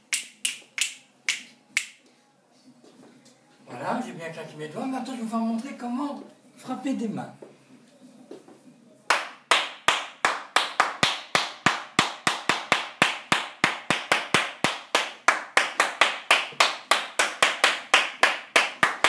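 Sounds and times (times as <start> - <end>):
person clapping hands: 0.1 - 2.0, 9.1 - 19.0.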